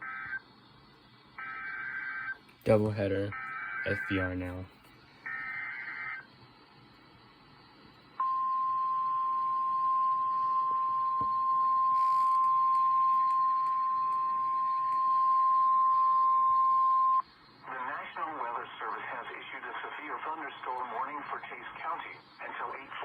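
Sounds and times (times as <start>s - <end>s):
steady alarm tone: 0.0s - 0.5s, 1.4s - 6.3s, 8.2s - 17.5s.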